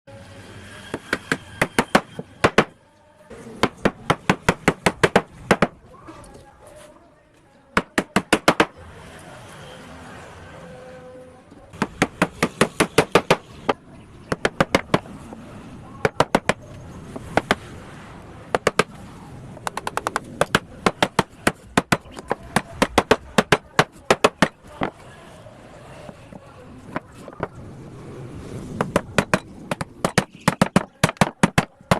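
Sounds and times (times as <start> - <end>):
rapid strikes on wood: 1.0 - 2.7, 3.6 - 5.8, 7.8 - 8.7, 11.8 - 15.1, 16.0 - 16.6, 17.2 - 17.6, 18.5 - 19.0, 19.6 - 25.0, 28.7 - 31.9.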